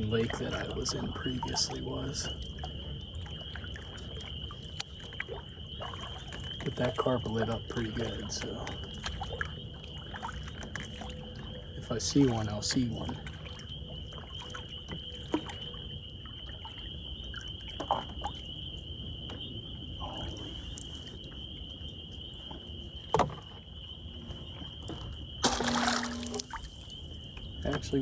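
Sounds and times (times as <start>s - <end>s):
water lapping around kayak: 0.0s - 28.0s
high-pitched whine: 25.4s - 27.1s.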